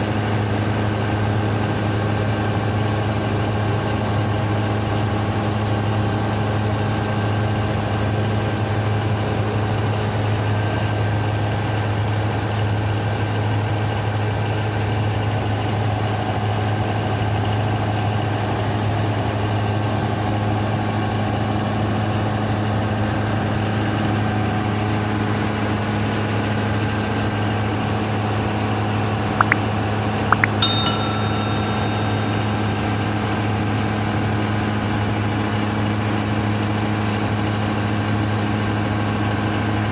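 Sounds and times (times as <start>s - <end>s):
short metallic ring: 30.4s - 33.1s.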